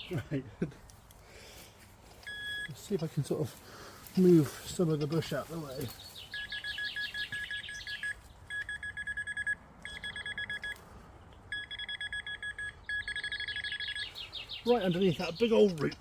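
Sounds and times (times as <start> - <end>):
rapid high-pitched beeping: 6.4 - 10.8, 11.5 - 14.1.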